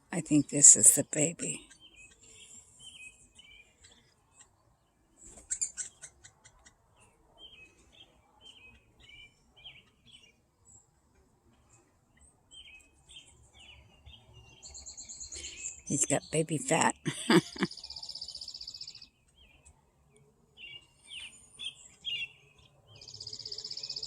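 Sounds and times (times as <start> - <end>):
woodpecker chattering: 5.5 - 6.8.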